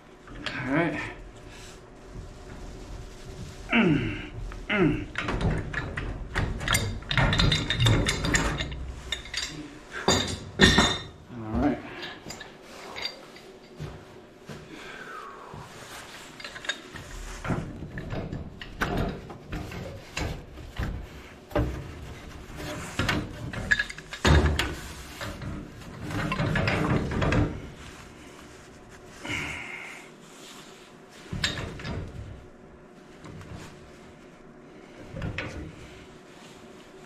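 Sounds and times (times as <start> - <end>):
wrenches clicking on metal pipe: 5.1 - 11.1.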